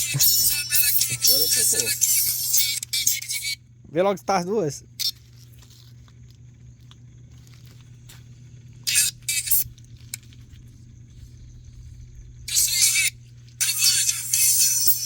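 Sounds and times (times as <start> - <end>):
high-pitched speaker hiss: 0.0 - 2.7, 12.5 - 15.0
steady low hum: 0.0 - 15.0.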